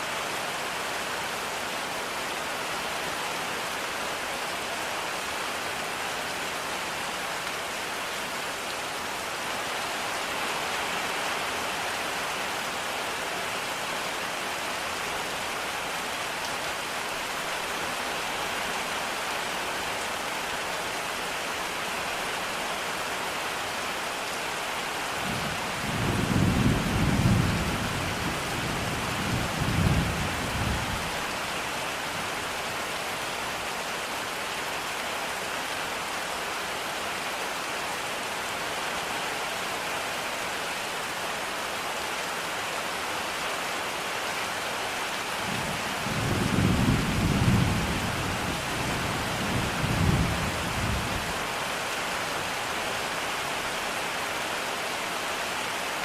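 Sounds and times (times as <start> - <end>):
steady rain falling: 0.0 - 56.0
low roll of thunder: 45.5 - 48.2.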